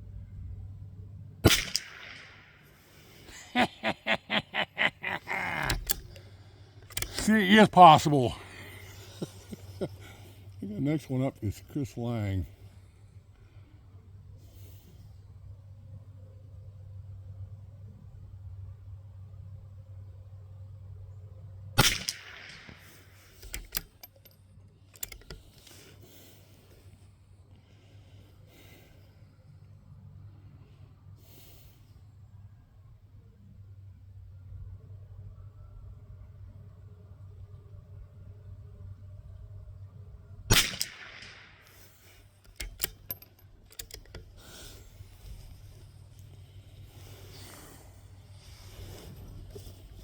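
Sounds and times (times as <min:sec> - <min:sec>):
rifle bolt metallic clicks: 0:01.4 - 0:02.6, 0:05.5 - 0:08.0, 0:21.8 - 0:26.5, 0:40.5 - 0:47.6
rifle shot: 0:01.4 - 0:03.0, 0:21.8 - 0:23.6, 0:40.5 - 0:43.0.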